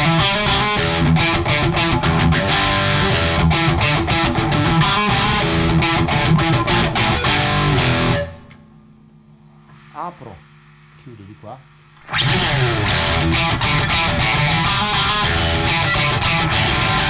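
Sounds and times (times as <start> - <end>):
overdriven electric guitar: 0.0 - 8.7, 12.0 - 17.0.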